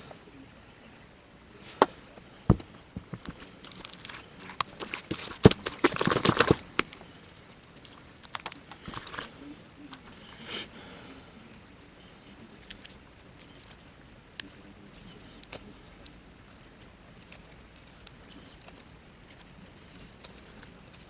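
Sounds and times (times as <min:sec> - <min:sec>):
soft brushing: 0:01.6 - 0:06.8.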